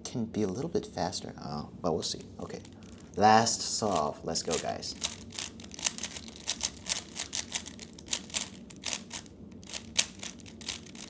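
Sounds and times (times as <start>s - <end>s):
puzzle cube plastic clicks: 2.2s - 11.0s.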